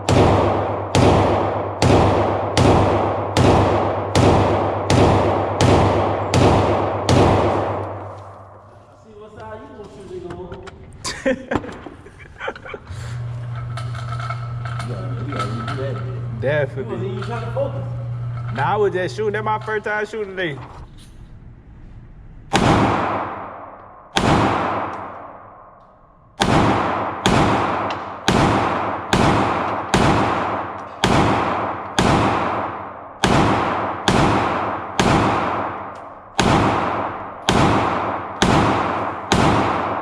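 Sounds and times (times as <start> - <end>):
handgun shots with echo: 0.0 - 8.5, 22.5 - 25.4, 26.4 - 40.0.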